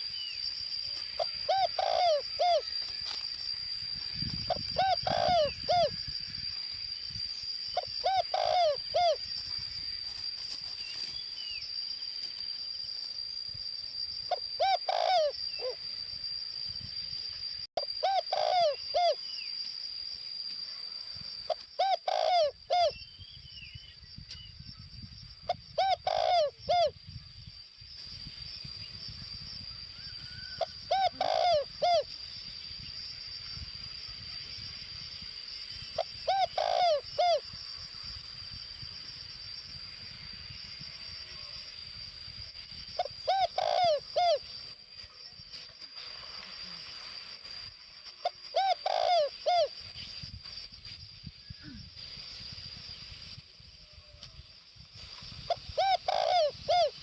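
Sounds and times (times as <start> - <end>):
steady high whine: 0.0 - 25.1
dove cooing call: 1.1 - 2.7, 4.5 - 6.0, 7.8 - 9.2, 14.3 - 15.8, 18.0 - 19.2, 21.5 - 23.0, 25.5 - 26.9, 30.5 - 32.1, 36.0 - 37.4, 43.0 - 44.5, 48.2 - 49.8, 55.5 - 57.0.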